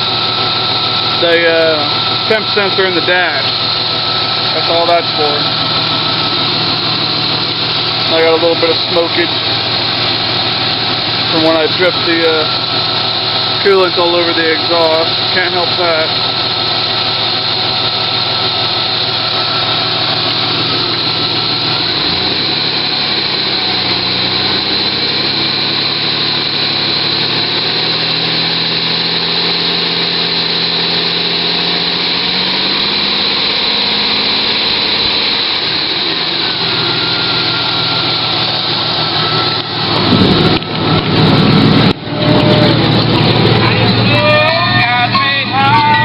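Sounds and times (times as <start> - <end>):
car engine idling: 0.0 - 46.0
high steady whine: 0.0 - 46.0.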